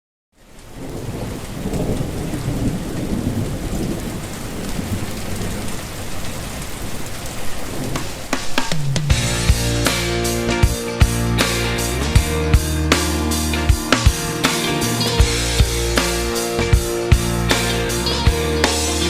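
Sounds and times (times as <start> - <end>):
steady rain: 0.3 - 19.0
low rolling thunder: 0.6 - 10.5.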